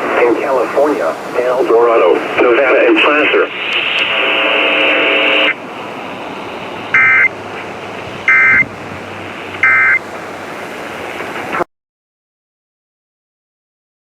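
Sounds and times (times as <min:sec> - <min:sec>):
loud multi-tone buzz: 0:06.9 - 0:07.3
warbling digital data bursts: 0:07.0 - 0:07.3.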